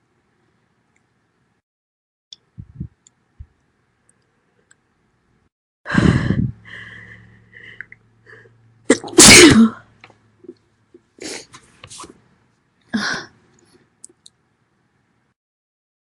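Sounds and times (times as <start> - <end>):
woman sneezing loudly: 8.9 - 9.8.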